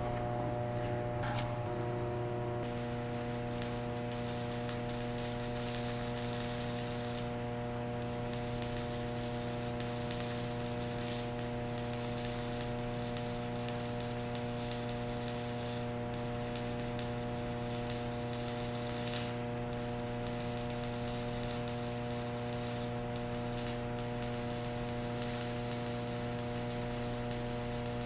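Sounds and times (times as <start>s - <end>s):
electrical hum: 0.0s - 12.7s
welding arc crackling: 2.6s - 28.0s.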